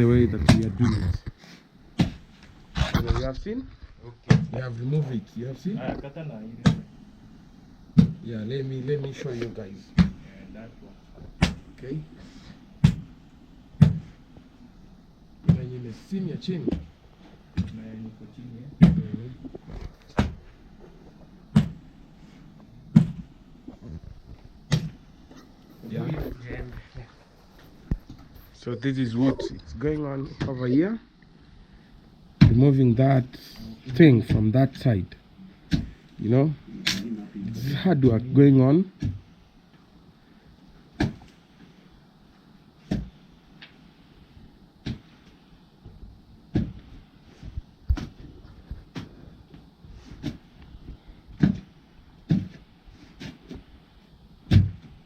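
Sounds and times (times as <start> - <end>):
axe chopping: 54.5 - 54.8.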